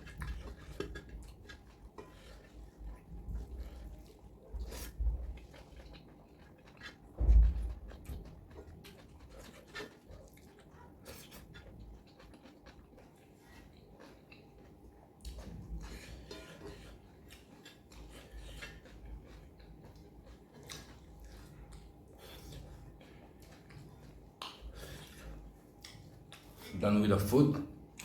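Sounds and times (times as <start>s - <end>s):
chewing and mouth noises: 0.0s - 26.8s
low thump: 7.2s - 7.8s.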